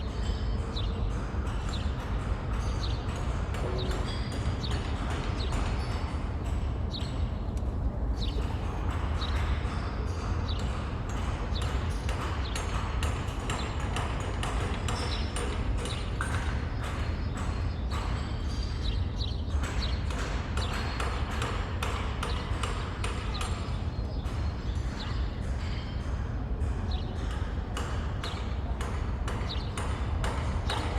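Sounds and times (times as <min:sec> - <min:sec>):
low traffic rumble: 0:02.0 - 0:12.0.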